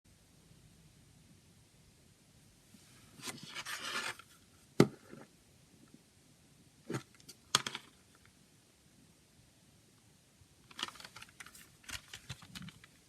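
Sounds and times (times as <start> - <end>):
cd case scraping rustle: 3.2 - 4.4.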